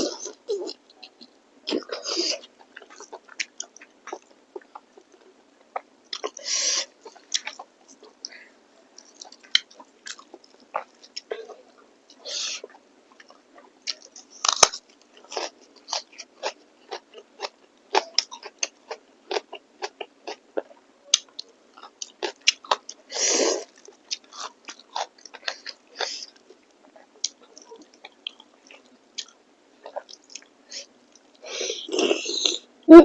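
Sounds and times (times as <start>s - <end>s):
wet chewing and lip smacks: 7.0s - 8.4s, 9.0s - 11.3s.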